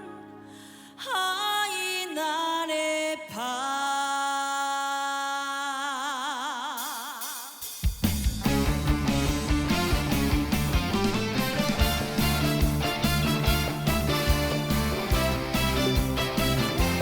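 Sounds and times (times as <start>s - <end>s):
woman singing wordless vocal: 0.0s - 7.6s.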